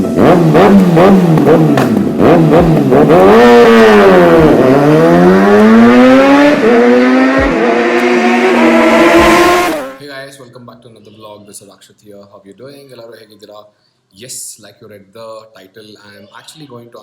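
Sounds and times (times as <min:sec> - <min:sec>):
motorcycle engine revving: 0:00.0 - 0:10.0.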